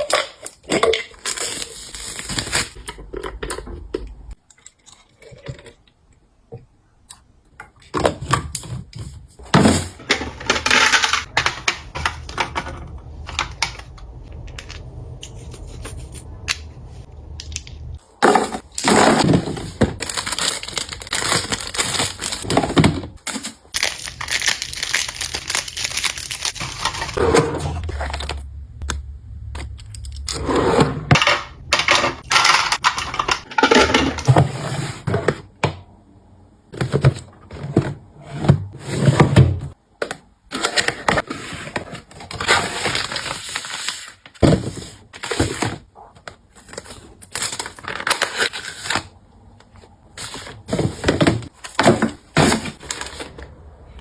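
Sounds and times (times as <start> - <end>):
plastic packaging handling: 19.2 - 27.2, 40.6 - 53.5.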